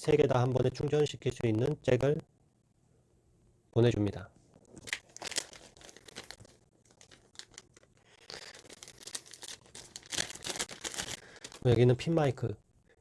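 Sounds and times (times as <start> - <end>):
plastic packaging crinkling: 4.6 - 11.8.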